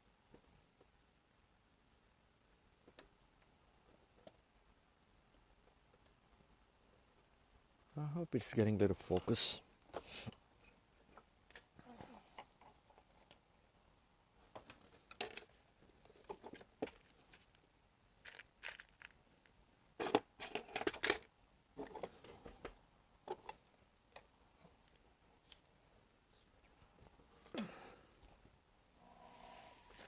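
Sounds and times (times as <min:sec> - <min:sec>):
small metal tools clinking: 0:18.2 - 0:19.3.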